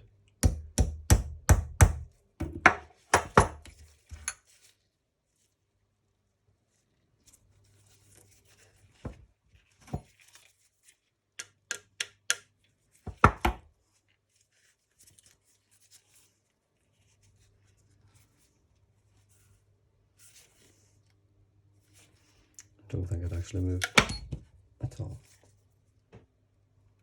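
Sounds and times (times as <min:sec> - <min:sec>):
tool knocking on metal part: 0:00.4 - 0:04.3.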